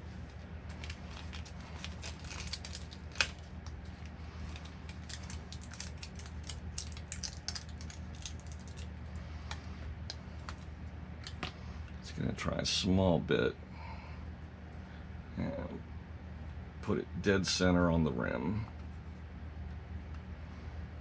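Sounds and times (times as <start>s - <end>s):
hands crinkling a package: 0.0s - 11.6s.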